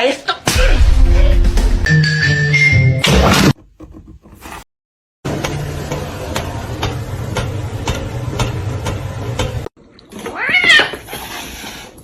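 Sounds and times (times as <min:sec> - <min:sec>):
cat meow: 0:10.2 - 0:11.0.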